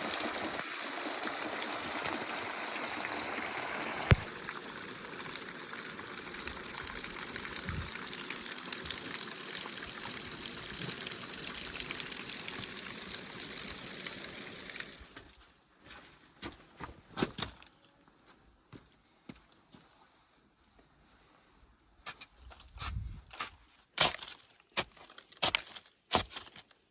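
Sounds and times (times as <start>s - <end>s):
spring water gushing: 0.0s - 15.2s.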